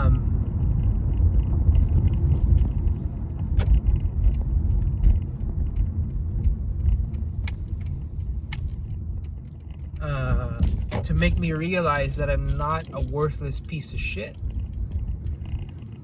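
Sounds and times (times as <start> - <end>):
car rumble: 0.0 - 16.0
metallic clicks and jingles: 3.6 - 16.0.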